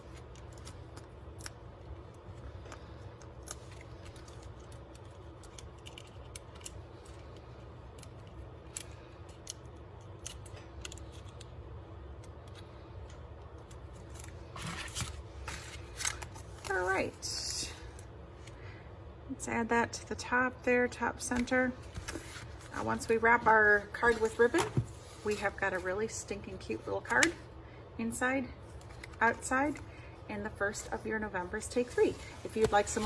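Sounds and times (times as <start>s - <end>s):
paper and card rustling: 13.7s - 17.9s, 21.3s - 27.4s, 28.6s - 33.0s.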